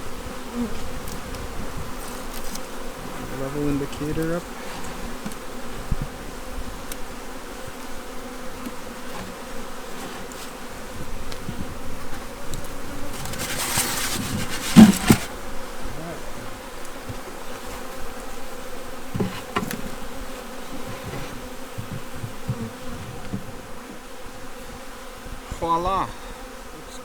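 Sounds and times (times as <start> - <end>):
honey bees buzzing: 0.0 - 27.0
rustling: 11.3 - 18.1, 19.1 - 23.7
knocks on hive: 13.1 - 15.4, 19.1 - 20.0, 20.9 - 23.6.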